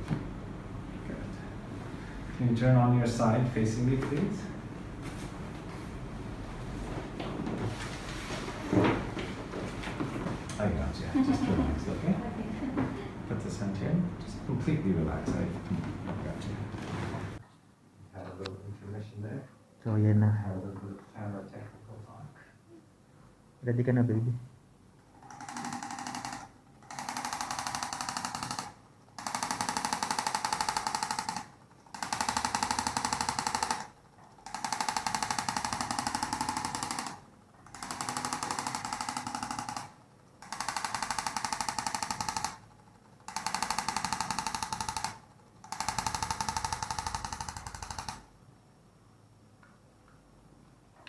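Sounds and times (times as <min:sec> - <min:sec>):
electric massager pulsing buzz: 0:25.0 - 0:48.3.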